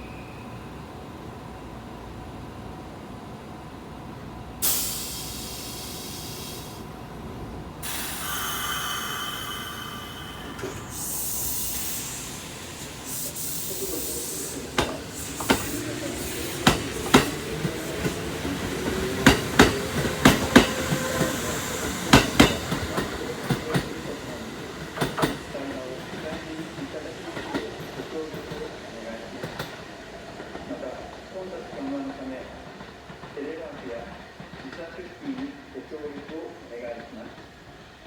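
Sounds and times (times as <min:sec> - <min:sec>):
compressed air hiss: 0:04.6 - 0:06.9, 0:07.8 - 0:18.0
train motor whine: 0:07.5 - 0:25.6
train wheels clacking: 0:07.8 - 0:37.9.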